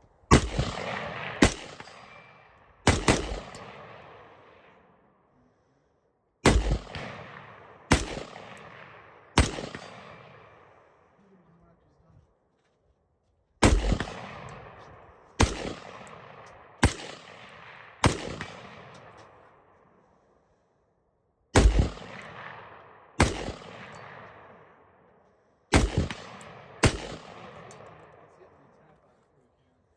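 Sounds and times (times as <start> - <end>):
rifle shots with echo: 0.3 - 5.1, 6.4 - 11.2, 13.6 - 20.2, 21.5 - 28.8.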